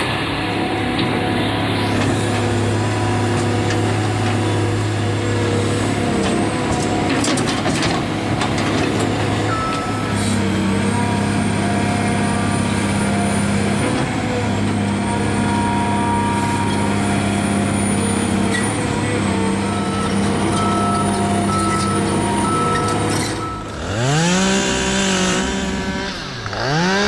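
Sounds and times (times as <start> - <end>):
diesel engine running: 0.0 - 27.0
chainsaw revving: 23.8 - 27.0.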